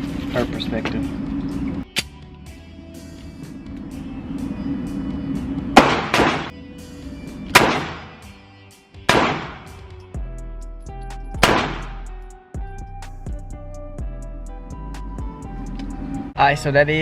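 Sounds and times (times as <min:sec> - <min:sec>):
background music: 0:00.0 - 0:17.0
pistol shots: 0:05.8 - 0:06.5, 0:07.5 - 0:08.3, 0:09.1 - 0:09.8, 0:11.4 - 0:12.1.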